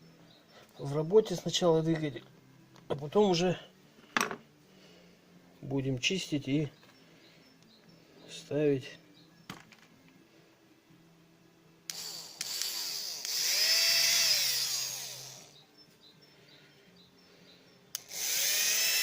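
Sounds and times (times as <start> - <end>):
electric motor whine: 11.9 - 15.6, 18.0 - 19.0.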